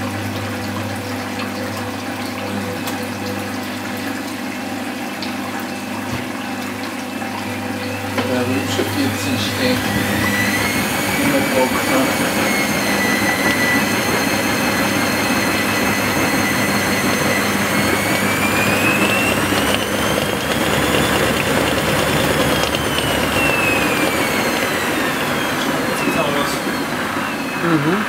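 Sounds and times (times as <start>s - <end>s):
washing machine spinning: 0.0s - 28.0s.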